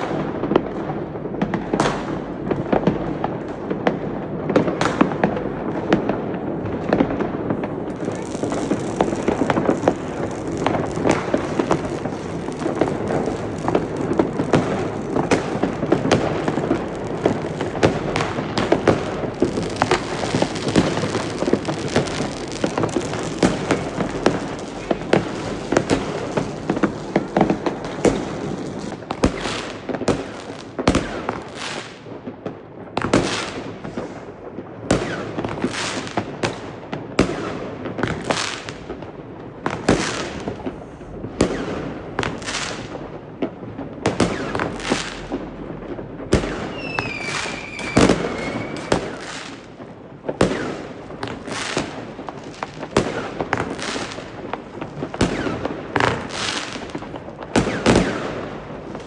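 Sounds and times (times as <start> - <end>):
fireworks bangs and pops: 0.0 - 59.0
high whistle: 46.7 - 49.3.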